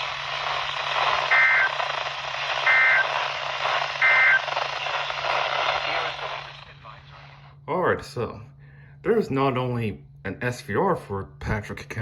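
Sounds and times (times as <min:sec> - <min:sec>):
radio hiss: 0:00.0 - 0:07.6
two-tone digital data bursts: 0:01.0 - 0:06.6.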